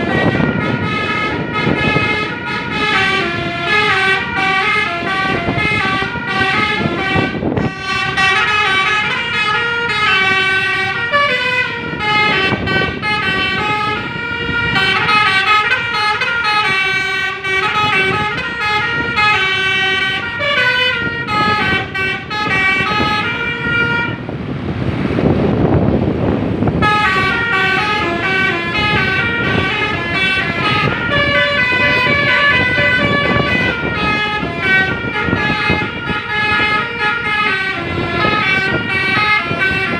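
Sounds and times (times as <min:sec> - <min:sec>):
multi-tone bus horn melody: 0:00.0 - 0:24.4, 0:26.2 - 0:39.9
rushing noise: 0:00.0 - 0:39.9.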